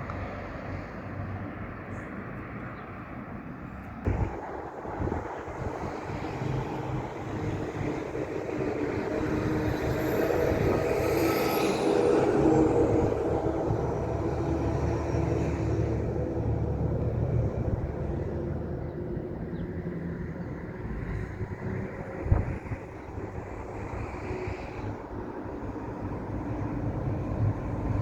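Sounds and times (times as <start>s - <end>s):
train passing: 0.0s - 28.0s
high whine dropping in pitch: 4.1s - 14.4s.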